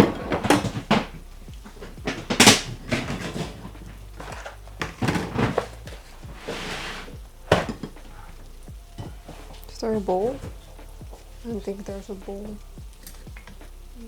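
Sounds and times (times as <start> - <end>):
dishes and pans clattering: 0.0 - 8.4, 9.0 - 11.2.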